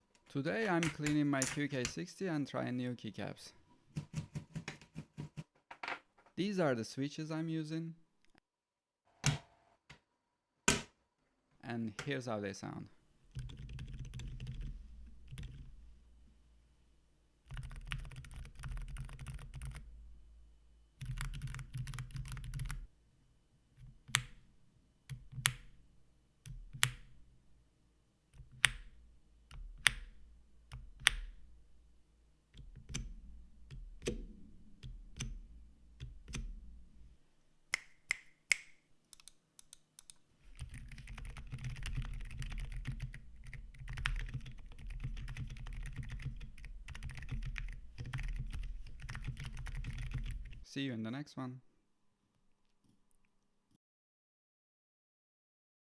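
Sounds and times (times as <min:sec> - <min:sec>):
mechanical keyboard typing: 0:13.4 - 0:14.7, 0:17.5 - 0:19.8, 0:21.0 - 0:22.8, 0:39.1 - 0:50.6.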